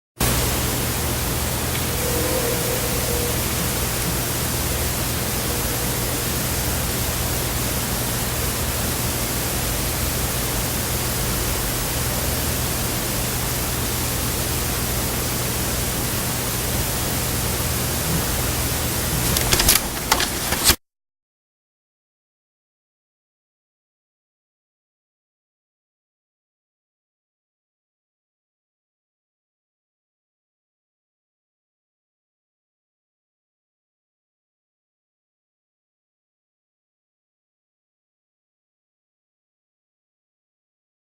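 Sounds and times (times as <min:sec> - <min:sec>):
low hum: 0:00.2 - 0:09.7
loud hiss: 0:00.2 - 0:20.7
faint thin tone: 0:01.6 - 0:06.9.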